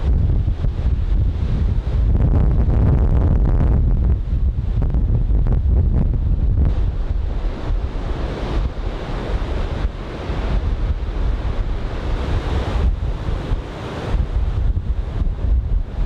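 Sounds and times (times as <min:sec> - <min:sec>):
surf breaking and washing: 0:00.0 - 0:16.0
wind buffeting microphone: 0:00.0 - 0:16.0.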